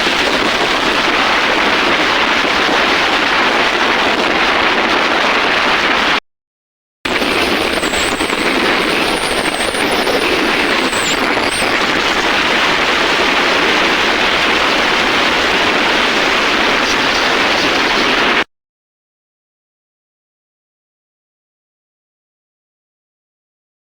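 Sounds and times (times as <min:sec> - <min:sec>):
wind buffeting microphone: 0:00.0 - 0:06.2.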